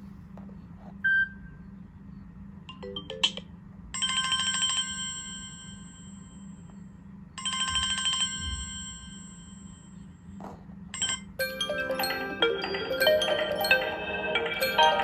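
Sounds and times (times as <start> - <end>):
alarm clock bell ringing: 4.0 - 6.6, 7.4 - 10.0, 11.0 - 15.0
melodic chiming alarm tune: 11.0 - 15.0.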